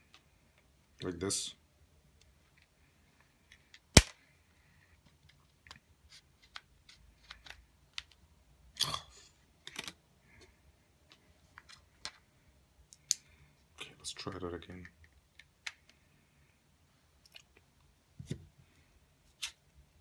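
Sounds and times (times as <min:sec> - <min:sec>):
plastic snap: 0:04.0 - 0:04.2.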